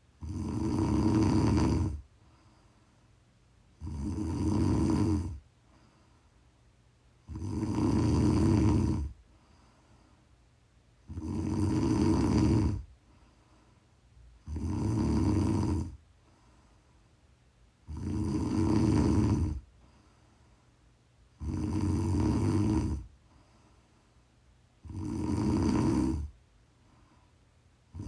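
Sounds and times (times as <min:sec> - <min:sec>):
woman snoring: 0:00.2 - 0:02.1, 0:03.8 - 0:05.4, 0:07.2 - 0:09.2, 0:11.0 - 0:12.9, 0:14.4 - 0:16.0, 0:17.8 - 0:19.7, 0:21.4 - 0:23.1, 0:24.8 - 0:26.4.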